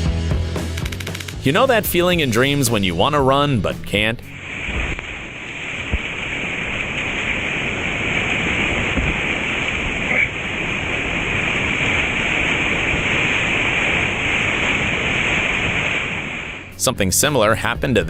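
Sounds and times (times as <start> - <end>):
water rushing: 1.2 - 17.8
wind: 4.3 - 16.7.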